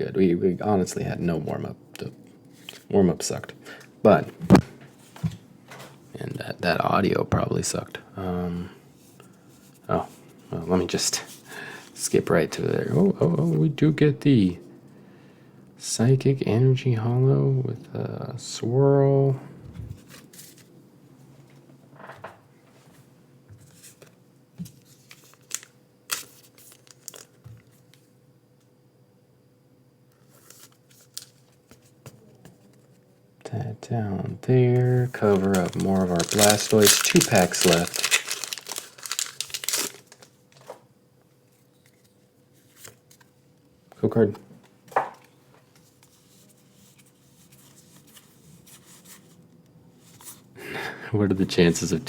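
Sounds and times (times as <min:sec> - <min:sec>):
cards rustling: 0:23.6 - 0:27.8, 0:30.2 - 0:33.0, 0:34.8 - 0:40.8, 0:41.5 - 0:43.4
foil wrapper crinkling: 0:24.8 - 0:27.5, 0:30.3 - 0:31.7, 0:35.0 - 0:40.8.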